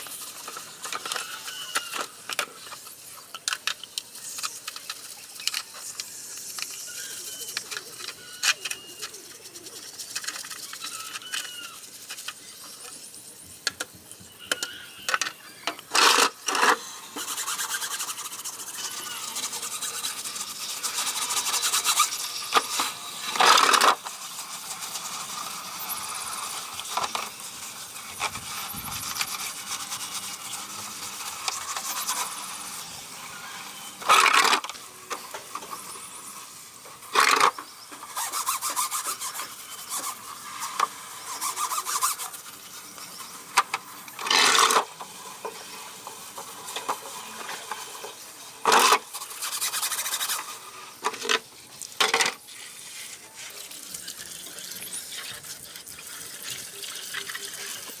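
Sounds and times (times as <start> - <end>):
scraping strokes on hard surface: 15.9 - 36.5, 44.2 - 51.5.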